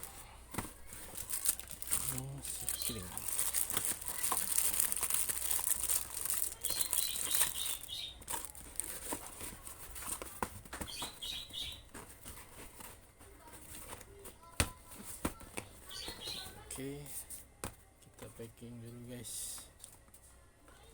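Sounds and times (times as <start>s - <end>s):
plastic packaging crinkling: 0.0s - 10.7s.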